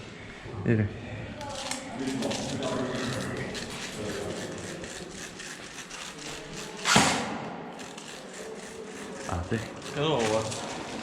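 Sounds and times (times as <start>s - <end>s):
sharp loud knock: 6.9s - 7.5s.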